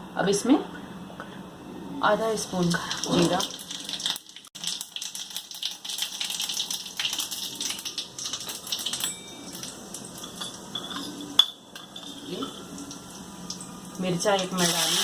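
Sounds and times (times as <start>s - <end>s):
seeds crackling in hot oil: 2.4s - 15.0s.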